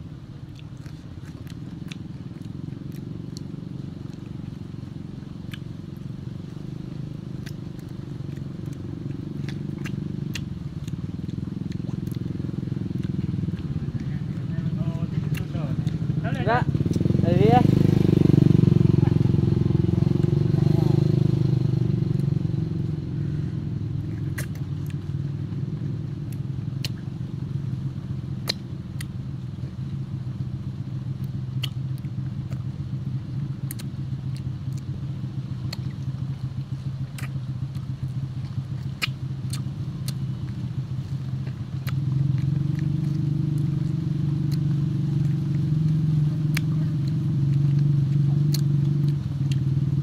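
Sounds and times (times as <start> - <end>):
low motor hum: 0.0 - 50.0.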